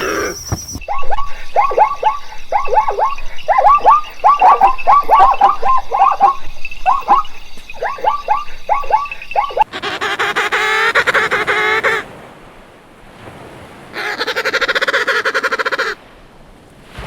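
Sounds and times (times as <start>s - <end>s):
chorus of animal calls: 0.0s - 12.1s.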